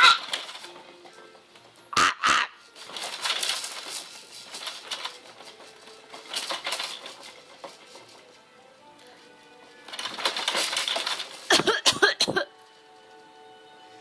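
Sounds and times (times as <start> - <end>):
rustling: 0.0 - 1.9, 2.5 - 14.0
person fake coughing: 11.5 - 12.5.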